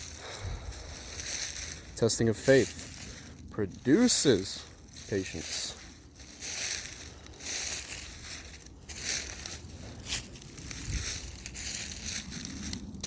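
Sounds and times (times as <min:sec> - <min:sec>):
crunching rustling noise: 0:00.0 - 0:13.0.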